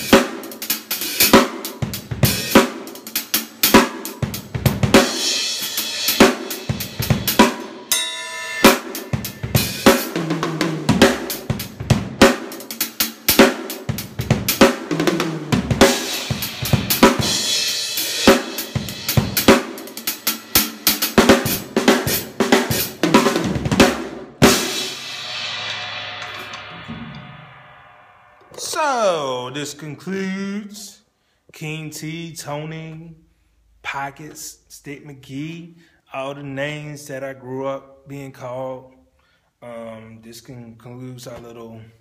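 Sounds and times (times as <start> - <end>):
drum kit playing: 0.0 - 29.5
cymbal crash ringing: 5.0 - 11.8, 24.5 - 29.3.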